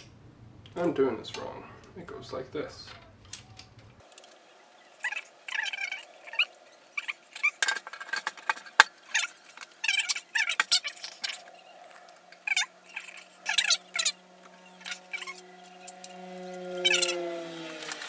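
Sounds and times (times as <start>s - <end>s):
computer parts clicking and scraping: 3.2s - 17.2s.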